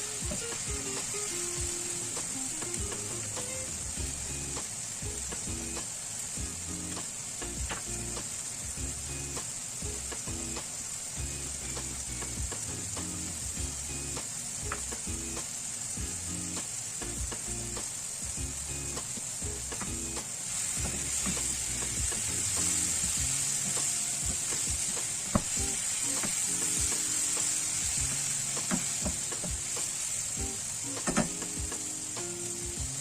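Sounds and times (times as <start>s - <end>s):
food sizzling in a hot pan: 0.0s - 33.0s.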